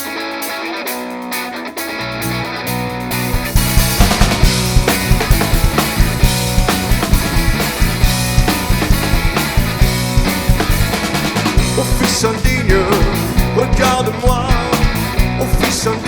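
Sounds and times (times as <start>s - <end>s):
drum kit beat: 0.0s - 16.0s
rock band playing: 0.0s - 16.0s.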